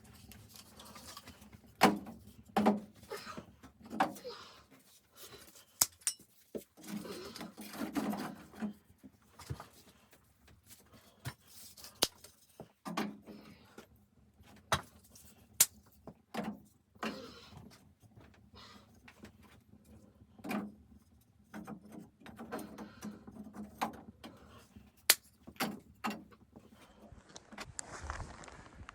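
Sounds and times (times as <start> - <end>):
rustling and crunching: 26.6 - 28.9.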